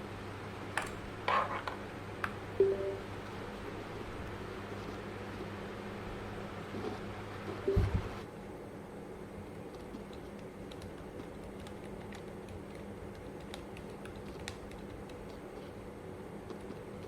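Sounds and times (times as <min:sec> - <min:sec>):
soft keyboard typing: 0:09.6 - 0:15.8, 0:16.4 - 0:17.0.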